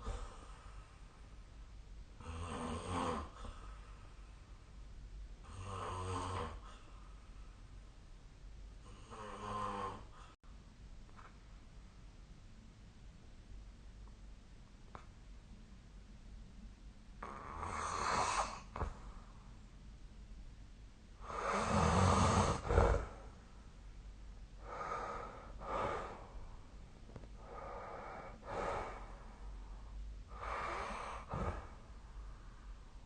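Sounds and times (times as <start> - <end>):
person snoring: 2.2 - 3.6, 5.4 - 6.7, 17.2 - 18.9, 21.2 - 23.3, 30.3 - 31.8.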